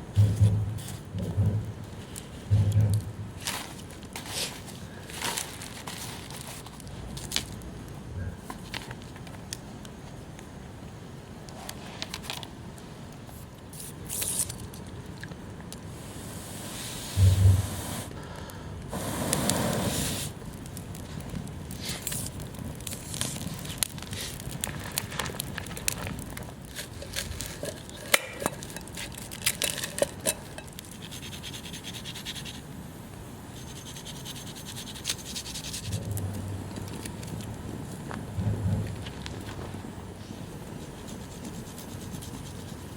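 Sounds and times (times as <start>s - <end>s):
rustling: 0.0s - 9.6s, 19.3s - 31.7s
scraping and crackling: 0.1s - 7.7s, 20.4s - 31.2s
low thump: 17.2s - 17.7s.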